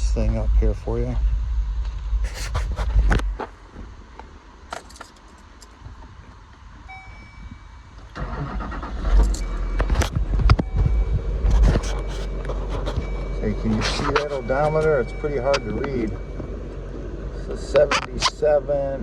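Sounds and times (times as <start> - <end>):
keys jingling: 4.7 - 5.7
diesel engine starting and idling: 6.8 - 19.0.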